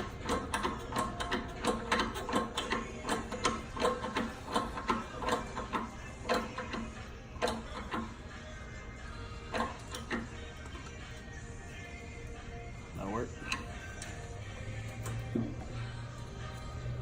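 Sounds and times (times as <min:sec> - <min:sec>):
metallic clicks and knocks: 0:00.0 - 0:08.1.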